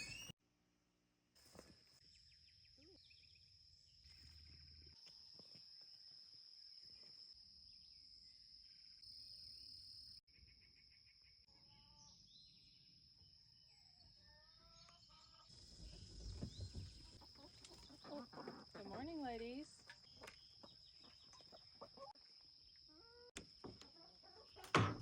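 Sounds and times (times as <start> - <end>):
chickens clucking: 16.3 - 22.2, 22.9 - 24.8.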